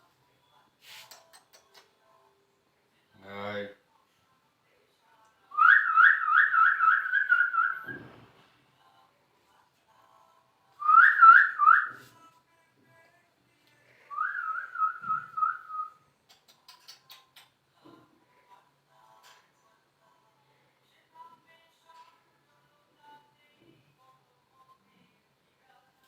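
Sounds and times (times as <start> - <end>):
warbling whistling: 5.6 - 8.0.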